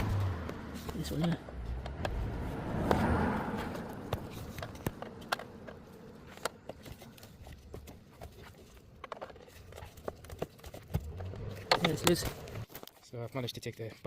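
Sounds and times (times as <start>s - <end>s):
scraping rush: 0.0s - 7.4s.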